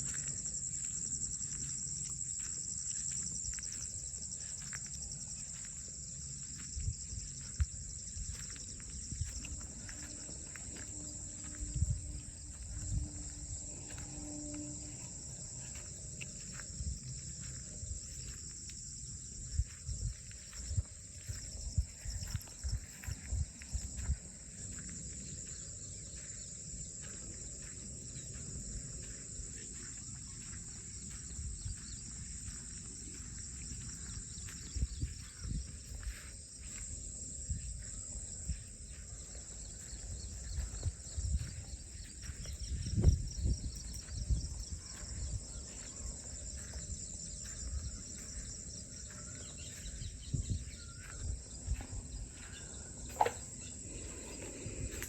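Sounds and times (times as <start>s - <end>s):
insects chirring: 0.0s - 55.0s.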